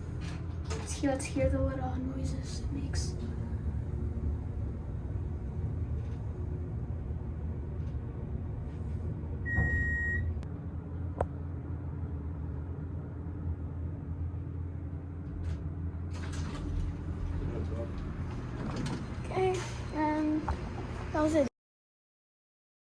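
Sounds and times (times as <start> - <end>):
elevator car hum and rumble: 0.0 - 21.5
short electronic beep: 9.5 - 10.3.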